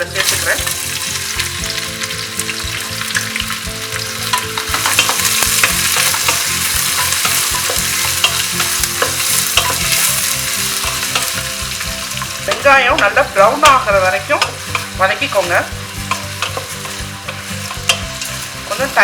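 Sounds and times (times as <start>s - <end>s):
onions sizzling in oil: 0.0s - 19.0s
spoon scraping a pot: 4.2s - 18.8s.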